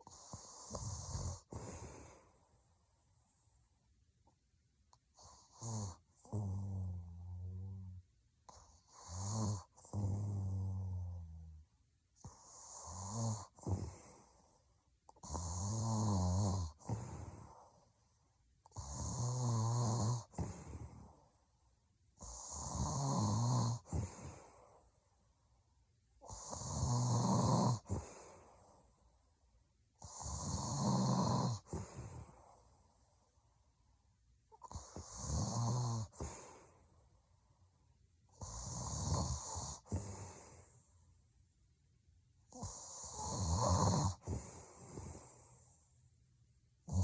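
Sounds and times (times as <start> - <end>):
woman snoring heavily: 0.1 - 2.2, 5.5 - 8.0, 8.9 - 11.4, 12.4 - 14.1, 15.2 - 17.5, 18.8 - 21.1, 22.2 - 24.4, 26.3 - 28.4, 30.0 - 32.4, 34.6 - 36.6, 38.4 - 40.6, 42.5 - 45.3.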